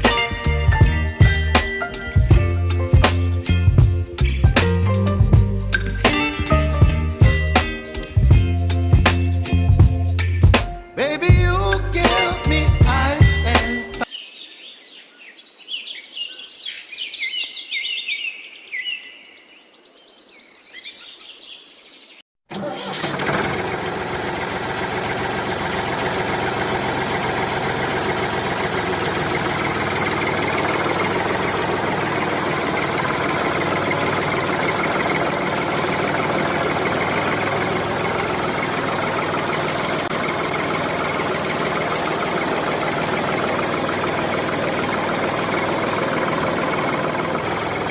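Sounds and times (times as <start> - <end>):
engine running loudly: 0.0 - 10.6, 22.5 - 47.9
birds chirping: 11.5 - 22.2.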